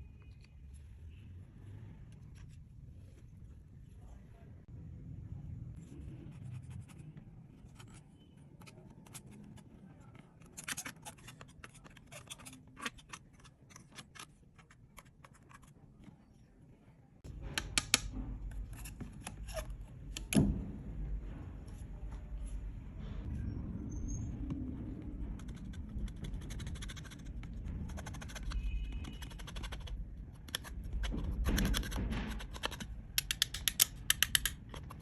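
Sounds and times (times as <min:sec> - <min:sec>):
low rumble: 0:03.8 - 0:06.1, 0:17.2 - 0:28.1.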